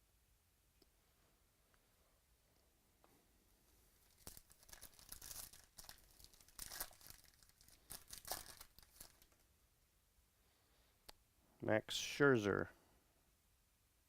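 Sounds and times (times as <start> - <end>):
card packaging crinkling: 4.0 - 9.4.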